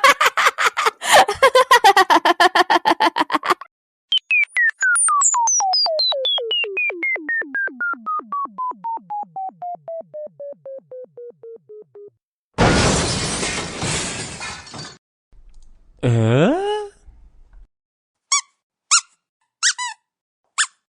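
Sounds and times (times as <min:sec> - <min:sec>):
descending electronic beeps: 0:04.1 - 0:12.1.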